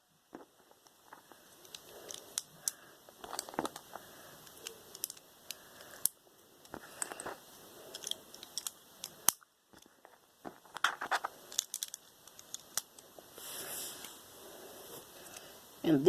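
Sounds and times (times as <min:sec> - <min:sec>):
plastic bricks clicking and snapping: 0:00.3 - 0:13.0.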